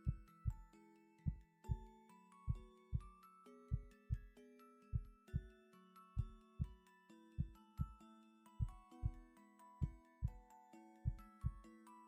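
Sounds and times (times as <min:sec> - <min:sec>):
tinkling mallet instrument melody: 0:00.0 - 0:12.0.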